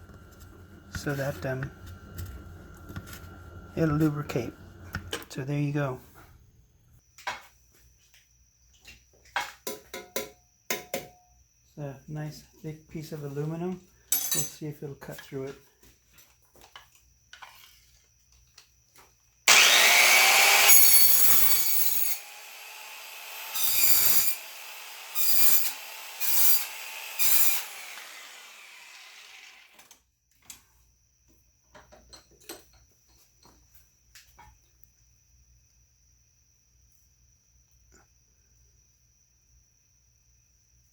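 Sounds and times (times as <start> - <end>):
electric metal shear cutting: 19.5 - 29.8.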